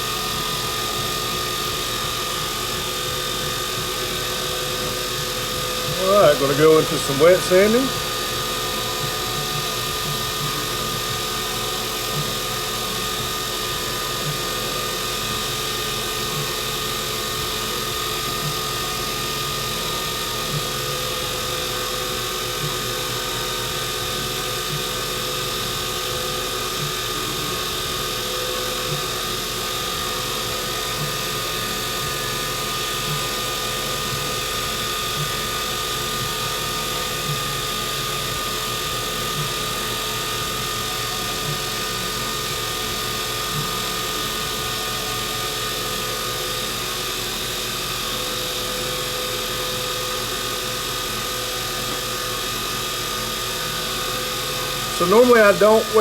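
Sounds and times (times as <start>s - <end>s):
wood lathe whining: 0.0s - 56.0s.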